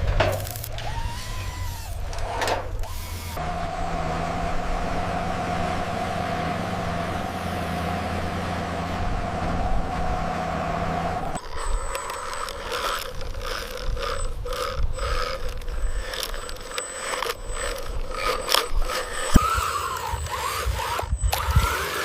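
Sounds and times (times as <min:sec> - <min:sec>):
small electric motor whining: 0:00.3 - 0:22.0
small clicks and rattles: 0:11.4 - 0:21.7.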